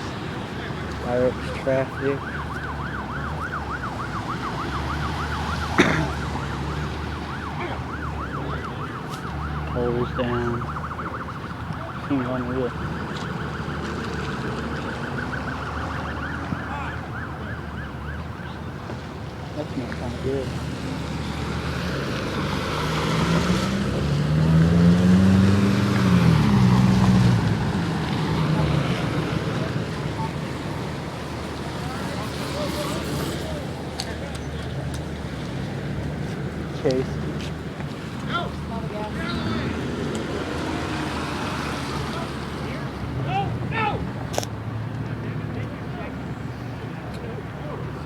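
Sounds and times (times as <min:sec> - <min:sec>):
siren yelping: 0:01.8 - 0:18.8
vehicle engine passing by: 0:19.6 - 0:48.0.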